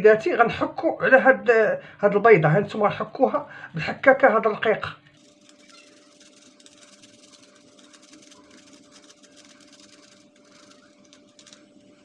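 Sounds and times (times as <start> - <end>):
faint steady hum: 0.0 - 12.0
garlic scraping on grater: 5.2 - 11.5.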